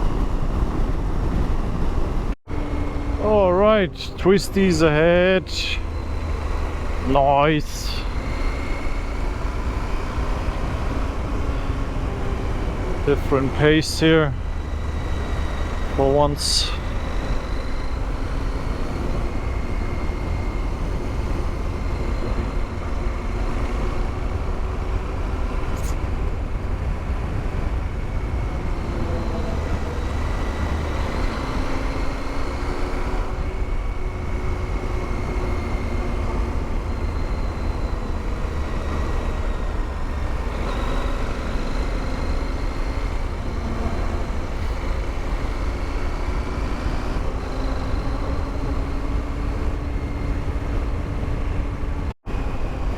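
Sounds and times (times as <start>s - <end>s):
wind noise from riding: 0.0s - 3.2s.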